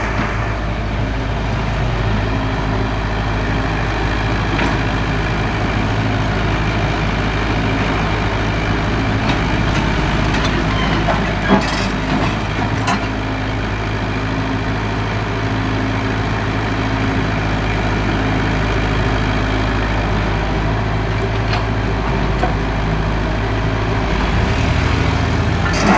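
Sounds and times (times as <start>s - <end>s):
heavy diesel engines running: 0.0s - 25.9s.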